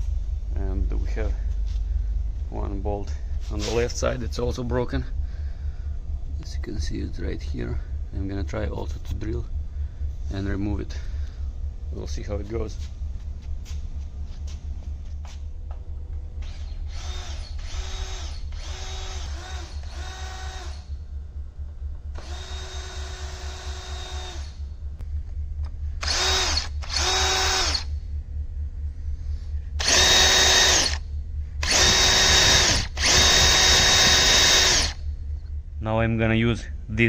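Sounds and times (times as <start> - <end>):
power drill drilling into metal: 26.0 - 27.9, 29.8 - 31.0, 31.6 - 35.0.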